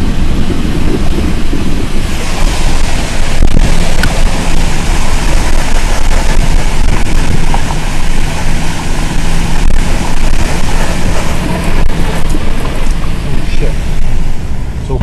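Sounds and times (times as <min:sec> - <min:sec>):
low engine hum: 0:00.0 - 0:15.0
water rushing: 0:00.0 - 0:15.0
wind noise on microphone: 0:00.0 - 0:15.0.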